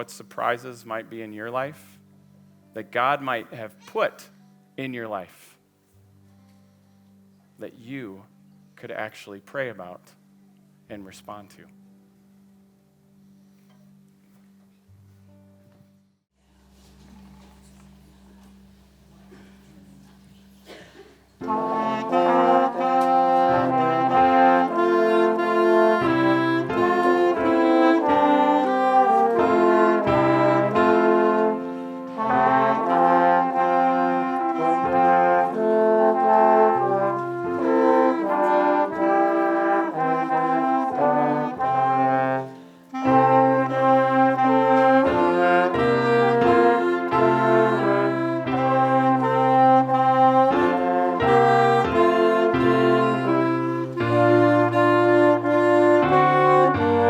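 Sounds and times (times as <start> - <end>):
instrumental music with horn lead: 21.3 - 57.0.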